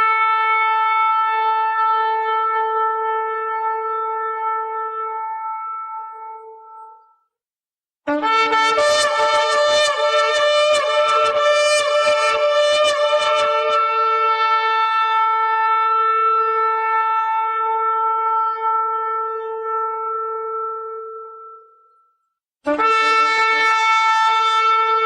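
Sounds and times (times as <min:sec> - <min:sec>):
shofar blast: 0:08.1 - 0:21.6, 0:22.7 - 0:25.0.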